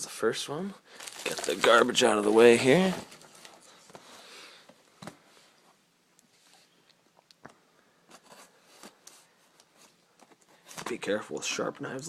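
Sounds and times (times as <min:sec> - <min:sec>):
hands handling card packaging: 0:01.0 - 0:04.1.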